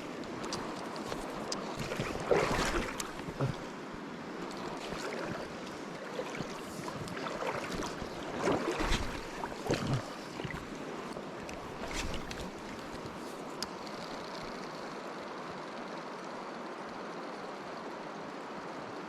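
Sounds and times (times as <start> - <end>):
water sloshing splashes: 0.0 - 3.7, 4.5 - 13.2
river rushing: 0.0 - 12.8
legs wading through water: 0.0 - 13.4.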